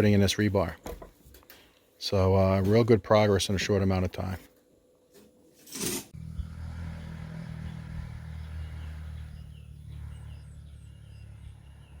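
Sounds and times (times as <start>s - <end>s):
low engine hum: 6.2s - 12.0s.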